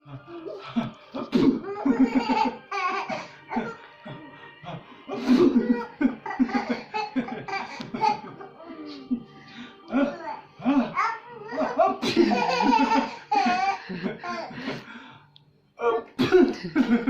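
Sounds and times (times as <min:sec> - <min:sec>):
child coughing: 0:01.2 - 0:02.4, 0:15.8 - 0:17.0
child laughing: 0:01.6 - 0:04.2, 0:10.0 - 0:14.6.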